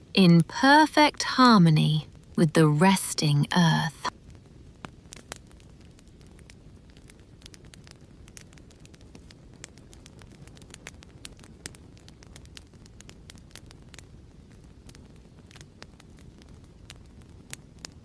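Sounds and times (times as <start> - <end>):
wood fire crackling: 3.7 - 18.0
low rumble of flames: 4.0 - 18.0.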